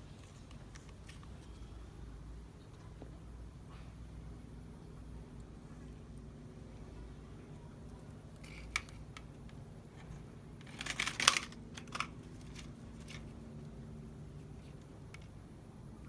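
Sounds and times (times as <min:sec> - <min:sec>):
low steady hum: 0:00.0 - 0:16.0
plastic toys clicking and clattering: 0:08.4 - 0:13.3.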